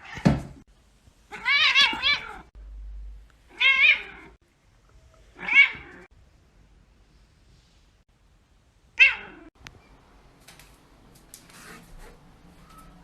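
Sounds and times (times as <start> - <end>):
cat meowing: 1.3 - 2.5.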